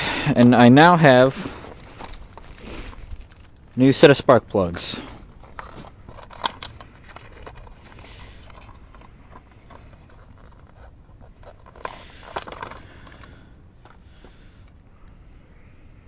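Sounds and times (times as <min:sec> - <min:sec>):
clicks and scrapes of handling: 0:01.0 - 0:04.2, 0:04.9 - 0:14.0.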